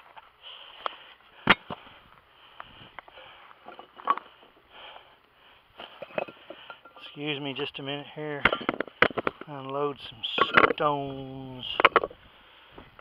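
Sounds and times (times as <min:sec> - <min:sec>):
sniffs and breaths: 0:00.4 - 0:07.0.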